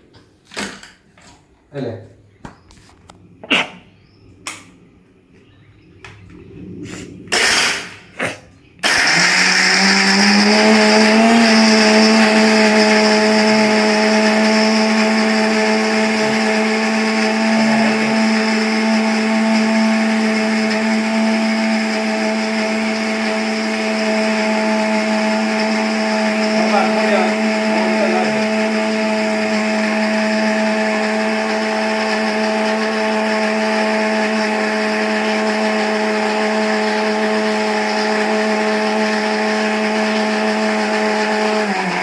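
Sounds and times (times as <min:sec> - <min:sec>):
mixer grinder motor whining: 0:07.3 - 0:08.1, 0:08.8 - 0:42.0.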